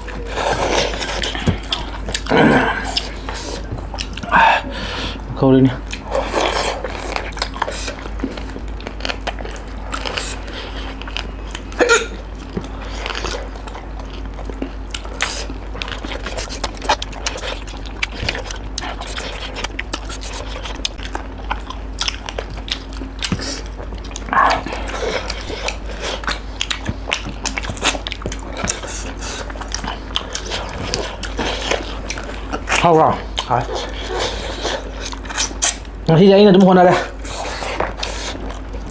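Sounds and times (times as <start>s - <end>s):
people chewing and smacking: 0.0s - 38.9s
steady low hum: 0.0s - 38.9s.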